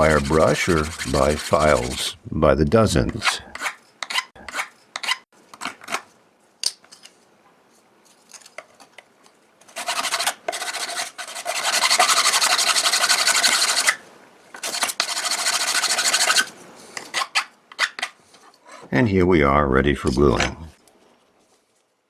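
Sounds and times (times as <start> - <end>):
hand file rasping on board edge: 0.0 - 1.9, 3.2 - 5.2, 9.8 - 14.0, 14.6 - 18.0.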